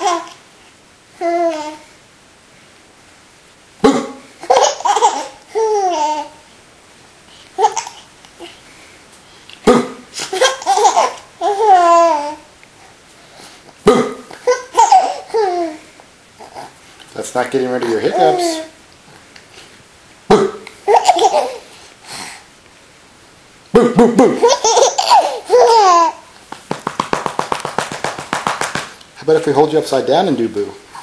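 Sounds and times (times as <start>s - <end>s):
young child laughing: 10.2s - 12.4s, 14.4s - 15.8s, 23.8s - 26.3s.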